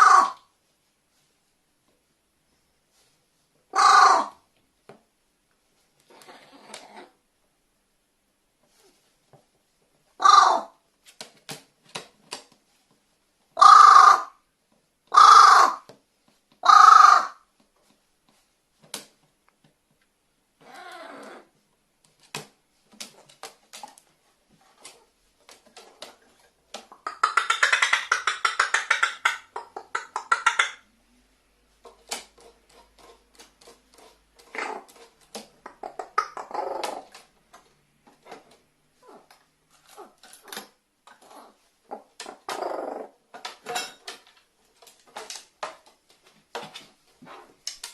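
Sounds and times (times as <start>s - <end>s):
crow rattling call: 3.8s - 4.3s, 10.2s - 10.7s, 13.6s - 14.3s, 15.1s - 15.8s, 16.6s - 17.4s
crow cawing: 13.6s - 14.3s, 15.1s - 15.8s, 16.6s - 17.4s.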